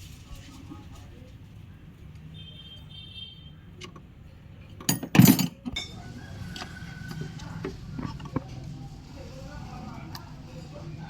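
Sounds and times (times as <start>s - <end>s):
metal parts clattering: 4.9s - 5.6s
metal clinking: 4.9s - 6.0s.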